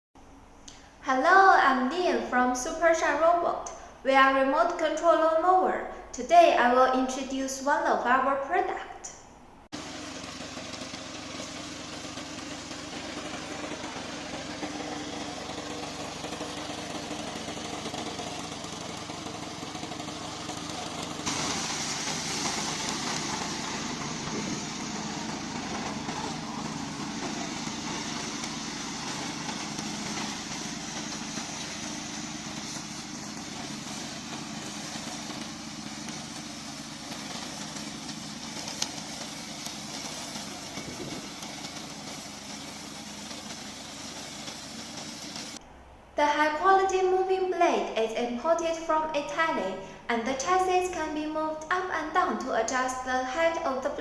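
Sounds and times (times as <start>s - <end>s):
mower engine running: 9.8s - 45.6s.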